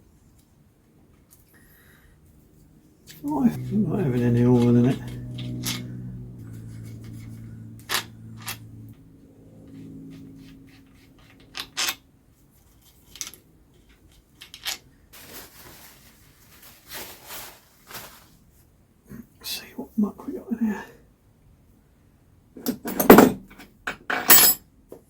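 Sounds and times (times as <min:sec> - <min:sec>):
low steady hum: 0:03.1 - 0:11.3
tools clicking and knocking: 0:22.7 - 0:24.6.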